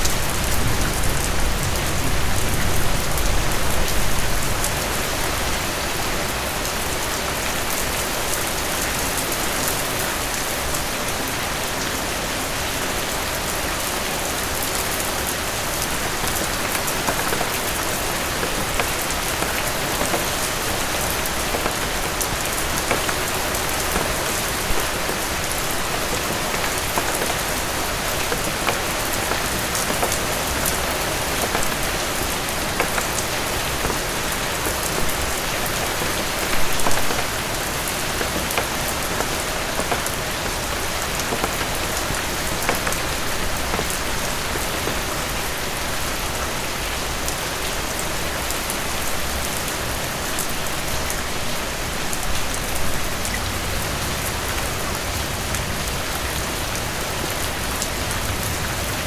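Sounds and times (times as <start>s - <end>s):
heavy rain: 0.0s - 59.0s
raindrop ticks: 14.7s - 46.2s.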